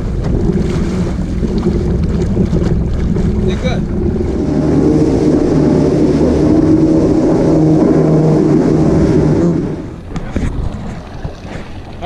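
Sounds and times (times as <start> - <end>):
watercraft engine running: 0.0 - 12.0
wind rumble on microphone: 0.0 - 12.0.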